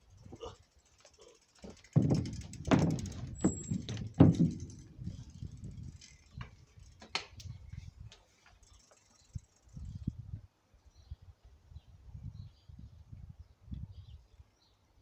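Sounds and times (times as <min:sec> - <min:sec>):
mountain bike knocking and rattling: 0:00.0 - 0:10.2.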